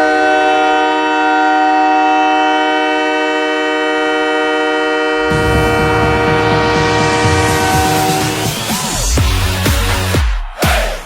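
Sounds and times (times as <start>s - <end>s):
goal horn chord: 0.0s - 10.0s
drums and bass music: 5.2s - 11.0s.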